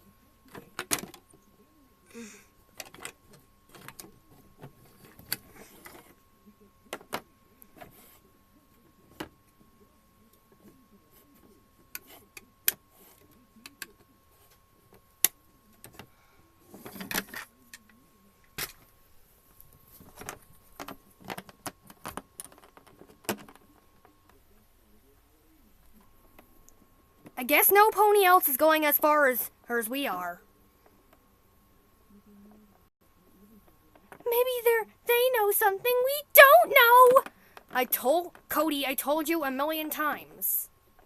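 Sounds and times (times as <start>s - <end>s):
faint steady high hum: 0.0s - 41.0s.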